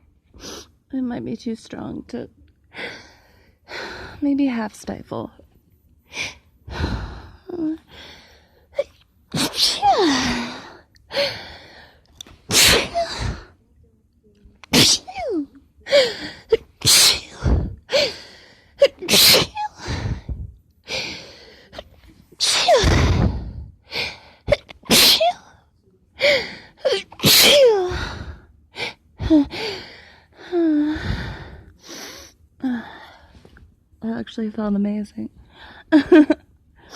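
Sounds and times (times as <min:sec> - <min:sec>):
person sneezing: 0:08.8 - 0:10.6, 0:12.5 - 0:13.5, 0:14.7 - 0:17.7, 0:18.8 - 0:20.2, 0:21.7 - 0:23.5, 0:24.5 - 0:25.4, 0:26.8 - 0:28.3.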